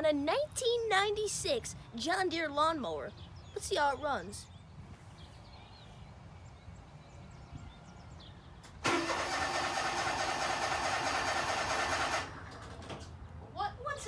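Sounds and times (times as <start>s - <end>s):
mower engine cranking: 8.7s - 13.1s.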